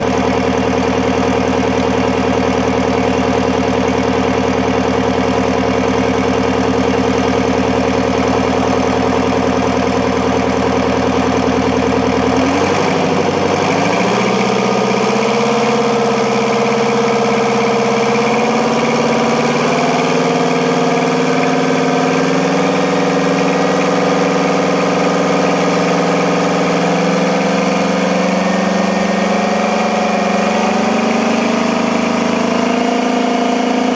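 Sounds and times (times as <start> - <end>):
diesel engine running and revving: 0.0 - 33.9.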